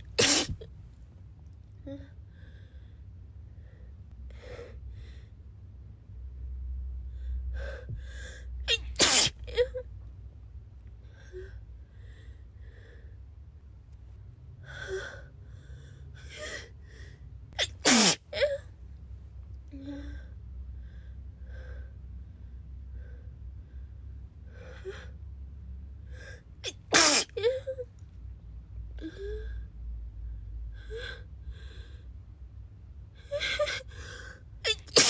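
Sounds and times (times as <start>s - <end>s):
person sneezing: 0.0s - 0.6s, 8.7s - 9.7s, 17.6s - 18.6s, 26.6s - 27.6s, 34.7s - 35.0s.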